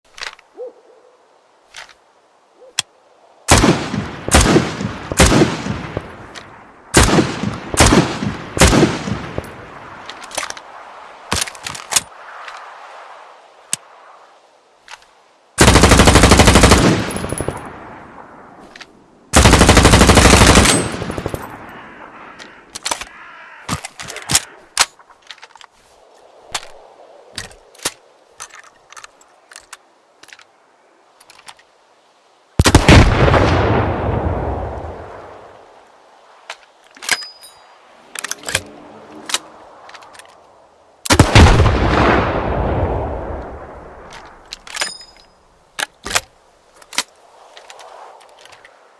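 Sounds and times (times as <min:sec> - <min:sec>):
rifle gunshots with echo: 0:03.5 - 0:06.2, 0:06.9 - 0:09.5
automatic gunfire bursts: 0:15.6 - 0:17.2, 0:19.4 - 0:21.1.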